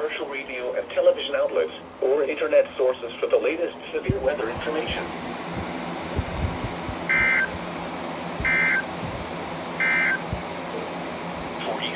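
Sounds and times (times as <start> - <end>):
radio hiss: 0.0 - 7.7, 8.3 - 11.9
warbling two-tone data screech: 7.1 - 7.5, 8.4 - 8.9, 9.8 - 10.2.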